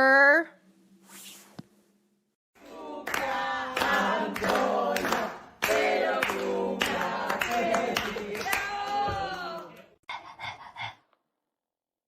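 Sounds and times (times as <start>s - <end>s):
voices singing: 2.6s - 9.8s
hands clapping to a beat: 2.6s - 10.0s.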